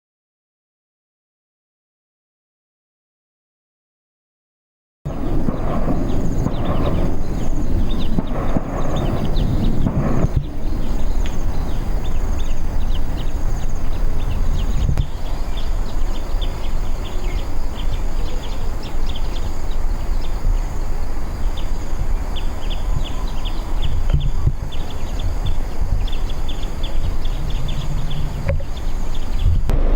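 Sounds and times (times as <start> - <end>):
high-pitched insect drone: 10.5 - 29.9.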